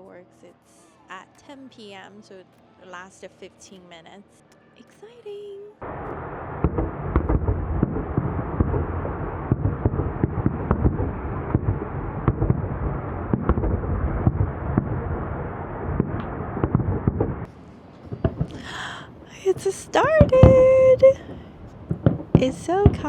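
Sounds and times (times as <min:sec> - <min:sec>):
fireworks bangs and pops: 0:05.8 - 0:23.0
steady rumble: 0:05.8 - 0:23.0.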